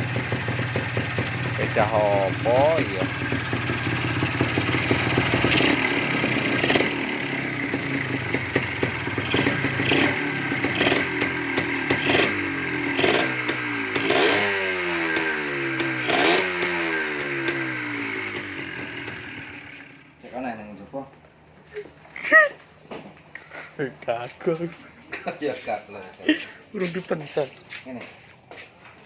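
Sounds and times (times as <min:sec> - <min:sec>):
motorcycle engine revving: 0:00.0 - 0:20.4.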